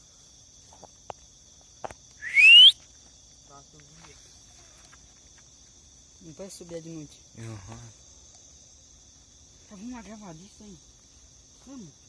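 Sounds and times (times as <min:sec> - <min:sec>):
night insects trilling: 0:00.0 - 0:12.0
loud rising whistle: 0:02.2 - 0:02.8.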